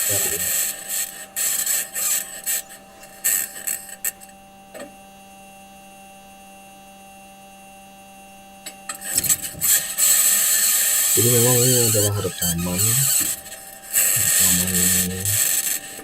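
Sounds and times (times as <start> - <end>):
steady hum with high whine: 0.0 - 16.0.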